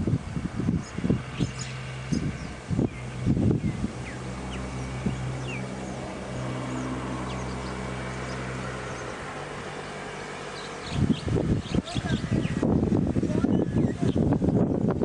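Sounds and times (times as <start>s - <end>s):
birds chirping: 0.0s - 14.4s
motor engine humming: 0.0s - 15.0s.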